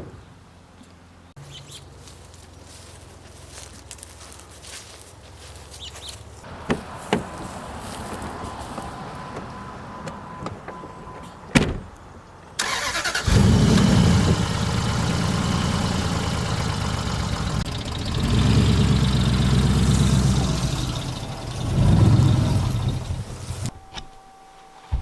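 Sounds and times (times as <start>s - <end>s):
car engine starting and revving: 12.6s - 23.8s.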